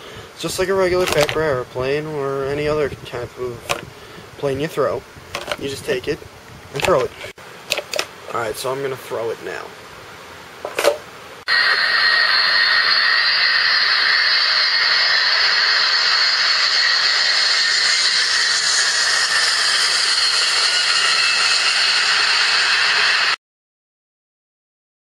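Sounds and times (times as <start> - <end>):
jet airplane rushing hiss: 11.4 - 23.4.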